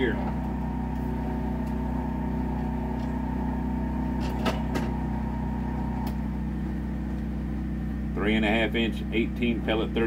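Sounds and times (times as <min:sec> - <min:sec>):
low mechanical hum: 0:00.0 - 0:10.0.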